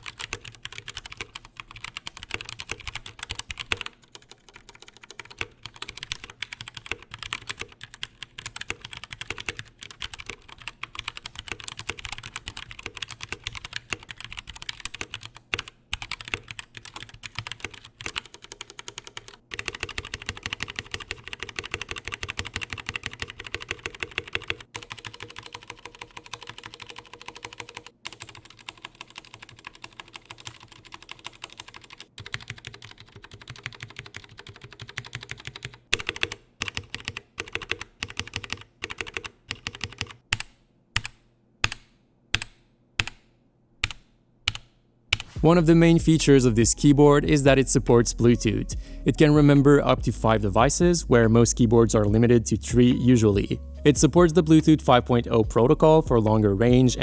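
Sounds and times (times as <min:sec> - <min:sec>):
mechanical keyboard typing: 0:00.0 - 0:41.8.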